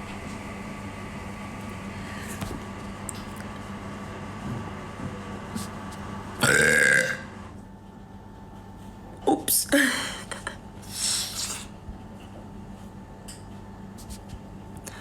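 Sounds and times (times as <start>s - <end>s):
faint background hum: 0.0s - 15.0s
person burping loudly: 6.4s - 7.3s.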